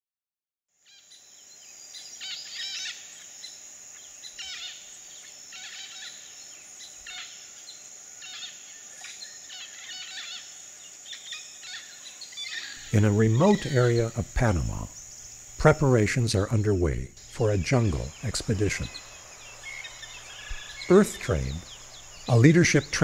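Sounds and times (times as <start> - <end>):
high-pitched insect drone: 0.8 - 23.0
short bird calls: 17.2 - 23.0.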